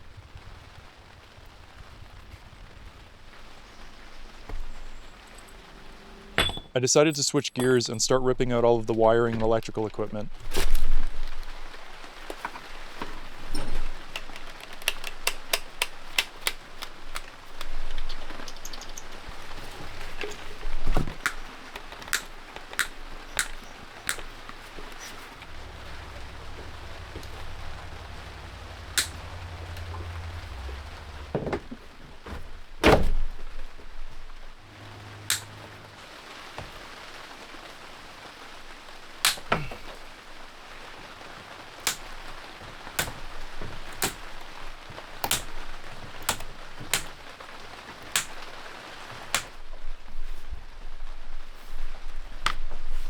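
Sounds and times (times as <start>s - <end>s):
sharp clicks and knocks: 12.3s - 33.4s, 35.2s - 35.9s, 39.2s - 40.0s, 41.8s - 48.6s, 49.2s - 49.6s
low hum: 23.0s - 36.1s.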